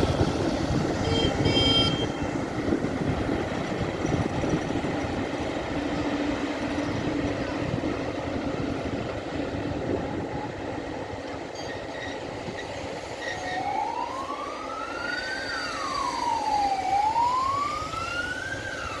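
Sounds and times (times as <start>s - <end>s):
train rumbling on rails: 0.0s - 19.0s
siren wailing: 13.3s - 19.0s.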